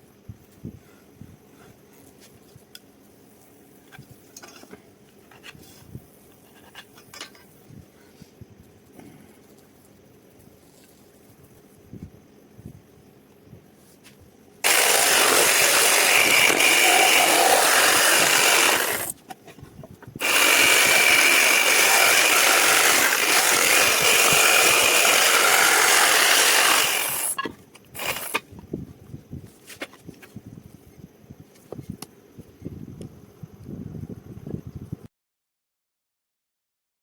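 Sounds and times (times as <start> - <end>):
power tool whining: 14.6 - 19.2, 20.2 - 28.4.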